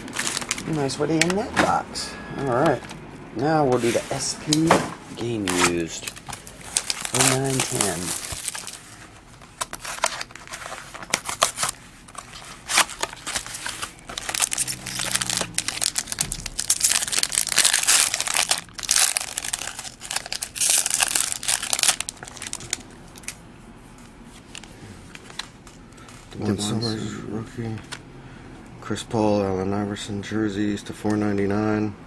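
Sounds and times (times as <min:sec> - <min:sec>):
plastic wrapping crinkling: 0:00.0 - 0:01.4, 0:05.3 - 0:23.4.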